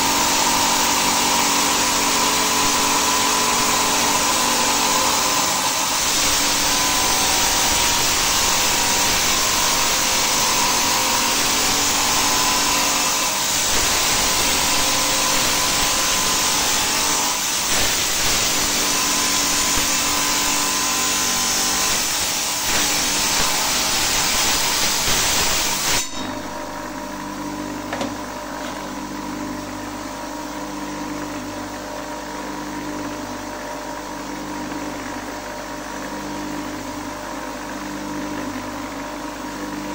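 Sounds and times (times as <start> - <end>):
stone saw grinding hiss: 0.0 - 27.2
saw motor humming: 0.0 - 29.1.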